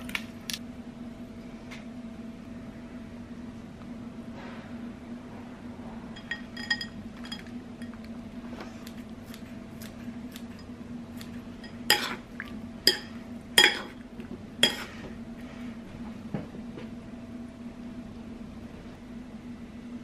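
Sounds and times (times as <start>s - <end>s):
low hum: 0.0s - 20.0s
kitchenware clinking: 6.2s - 8.1s, 12.9s - 14.0s, 14.6s - 15.0s.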